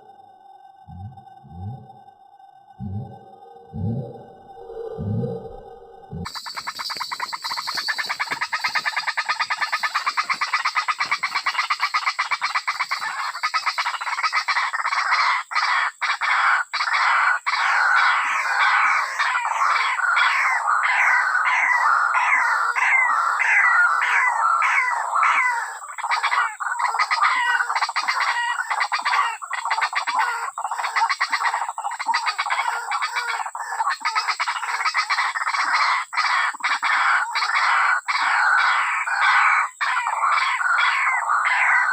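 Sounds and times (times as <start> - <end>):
thin high tone: 0.0 - 8.3
birds chattering: 2.8 - 41.9.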